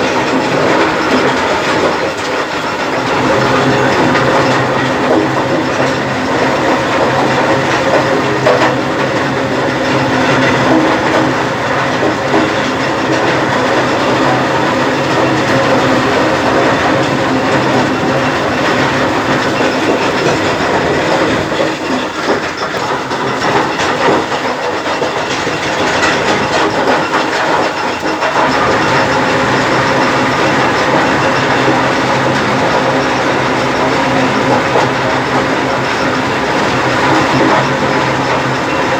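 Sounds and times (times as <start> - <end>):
machine hum: 0.0 - 38.9
stone crusher rattling clatter: 0.0 - 38.9.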